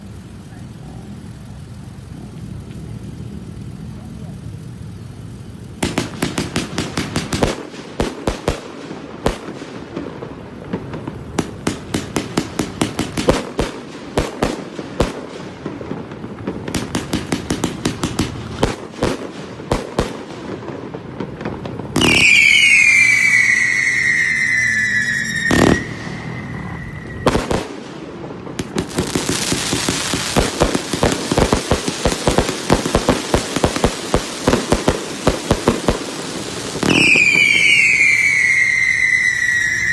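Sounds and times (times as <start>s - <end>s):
fireworks crackle: 0.0s - 39.9s
fireworks reports: 0.0s - 39.9s
firework whistle falling: 22.0s - 31.7s, 36.7s - 39.9s.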